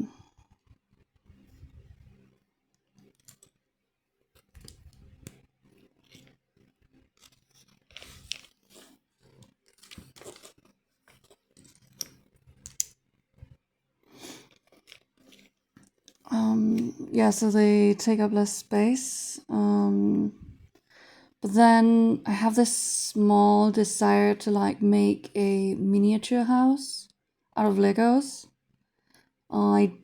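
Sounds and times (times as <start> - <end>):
plastic bricks clicking together: 11.6 - 13.0.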